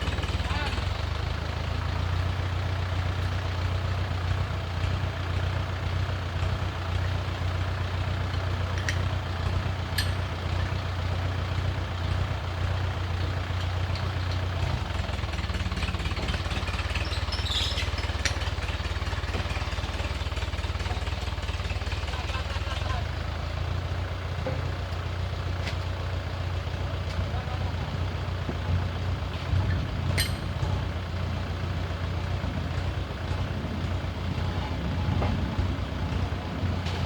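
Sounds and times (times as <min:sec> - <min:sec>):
heavy engine humming: 0:00.0 - 0:37.0.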